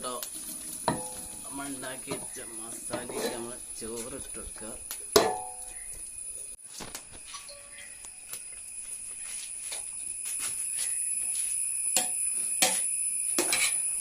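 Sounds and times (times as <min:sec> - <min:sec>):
metal spatula scraping a pan: 0:00.3 - 0:04.2, 0:12.0 - 0:14.0
steady high-pitched tone: 0:07.3 - 0:14.0.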